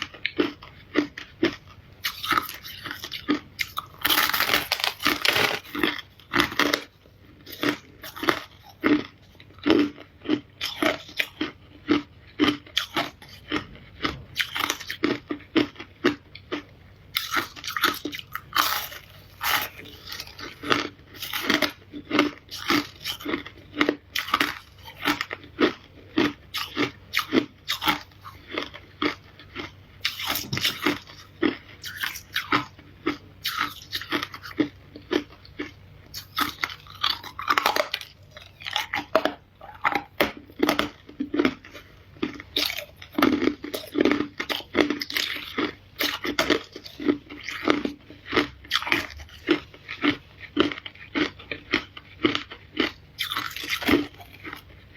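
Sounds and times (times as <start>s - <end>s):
ice being chewed: 0.0s - 54.9s.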